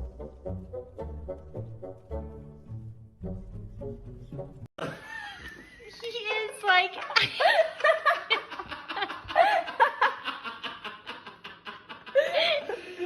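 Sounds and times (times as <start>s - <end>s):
person laughing: 4.8s - 5.8s, 7.1s - 13.0s.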